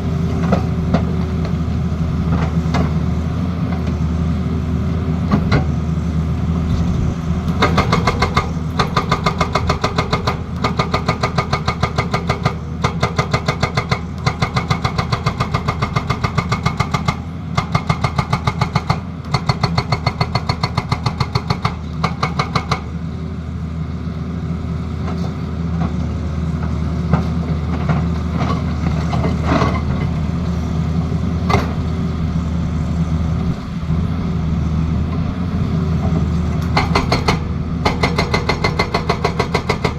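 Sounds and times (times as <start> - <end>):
excavator diesel engine running: 0.0 - 39.9
hydraulic breaker hammering: 7.5 - 23.0, 36.6 - 39.9.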